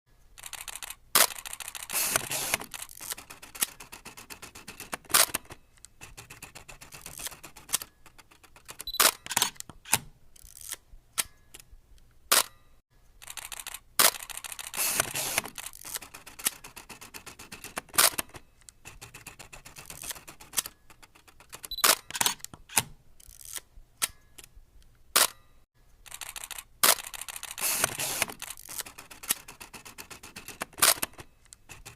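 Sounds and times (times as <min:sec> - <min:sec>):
film projector clicking and whirring: 0:00.4 - 0:05.9, 0:13.2 - 0:18.4, 0:26.1 - 0:31.9.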